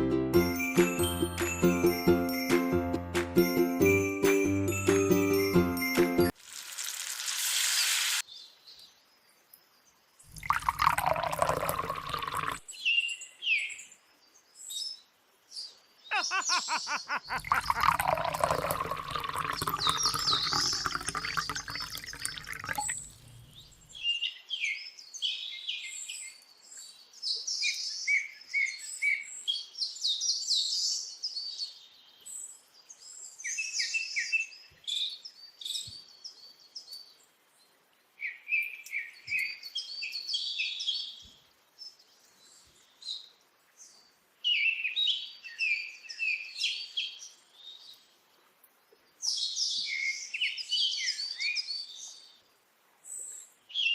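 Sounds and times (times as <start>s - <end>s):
small birds chirping: 7.7s - 53.9s
rushing watery noise: 10.3s - 12.6s, 17.2s - 23.6s.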